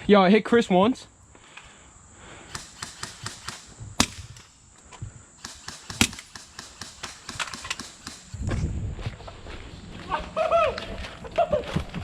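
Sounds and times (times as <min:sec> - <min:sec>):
sharp cracks: 0:02.4 - 0:08.5.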